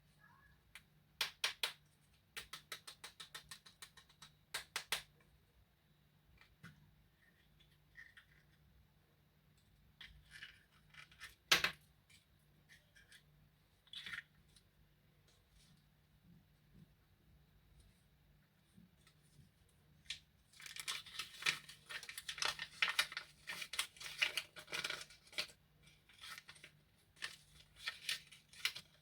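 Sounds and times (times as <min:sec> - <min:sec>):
candy packaging clicks and crackles: 0:00.7 - 0:05.1, 0:20.0 - 0:29.0.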